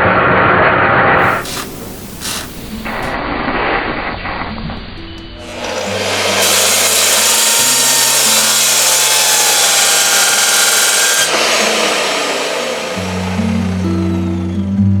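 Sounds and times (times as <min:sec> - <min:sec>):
power tool hissing on material: 0:01.2 - 0:03.2, 0:05.4 - 0:14.3.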